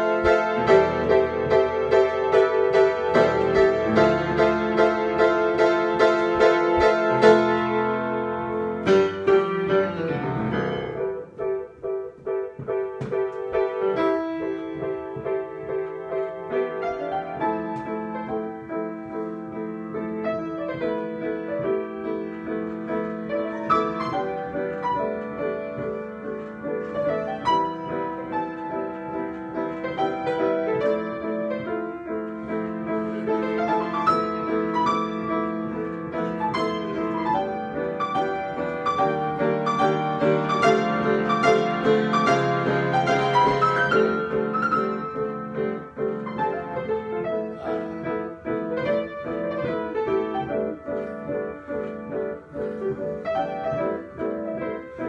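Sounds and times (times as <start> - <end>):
solo piano: 0.0 - 55.0.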